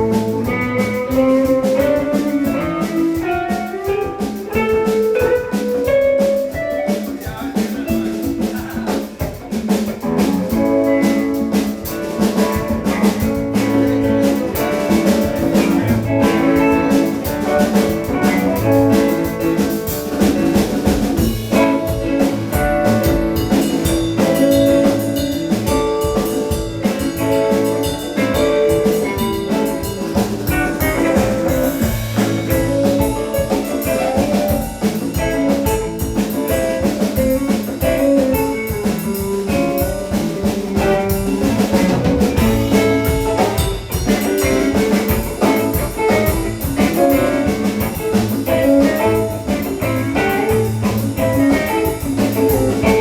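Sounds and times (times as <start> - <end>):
drum kit steady beat: 0.0 - 53.0
guitar: 0.0 - 53.0.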